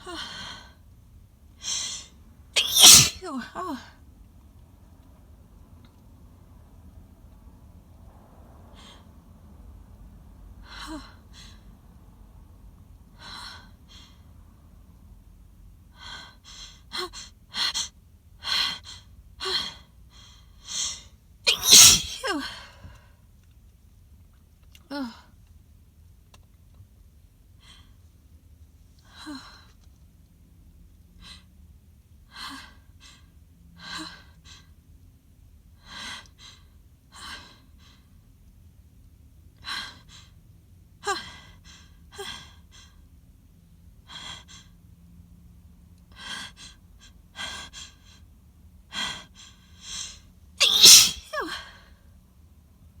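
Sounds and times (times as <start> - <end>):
woman sneezing: 2.6 - 3.7, 21.5 - 22.6, 50.6 - 51.6
woman gasping inhales: 21.5 - 22.2, 49.9 - 51.2.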